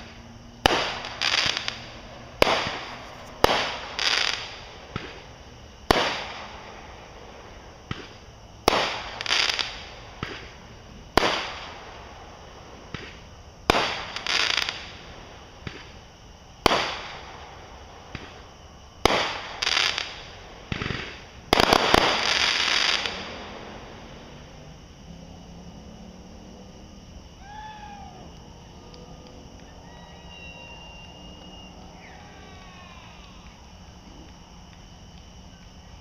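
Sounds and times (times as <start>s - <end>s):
fireworks banging: 0.0s - 24.5s
fireworks crackling: 0.0s - 36.0s.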